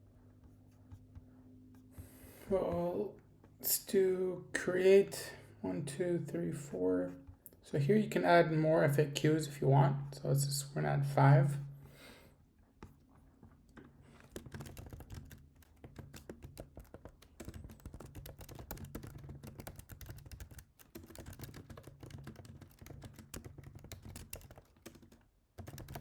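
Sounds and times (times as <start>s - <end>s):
fast typing on keyboard: 14.2s - 26.0s.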